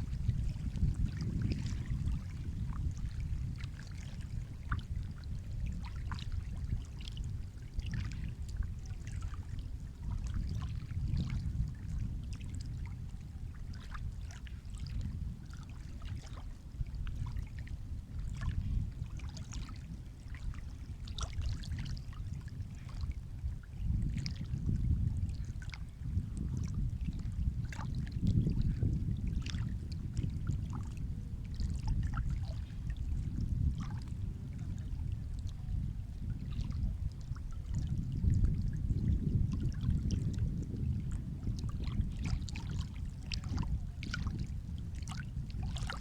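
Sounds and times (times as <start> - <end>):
sea water lapping and sloshing: 0.0 - 46.0
small splashes and trickles: 0.2 - 17.7, 18.3 - 35.5, 36.1 - 46.0.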